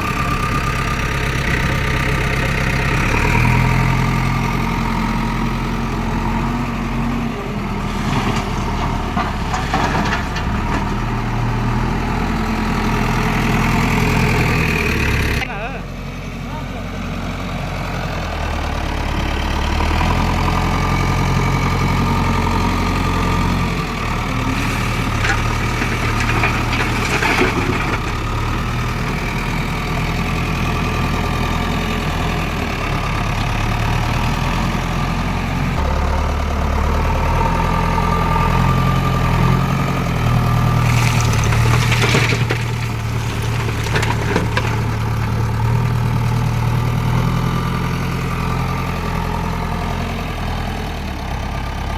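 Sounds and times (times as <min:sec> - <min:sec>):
diesel engine running: 0:00.0 - 0:51.9
knocks and clatter: 0:07.9 - 0:11.3, 0:24.5 - 0:28.7, 0:40.8 - 0:45.8.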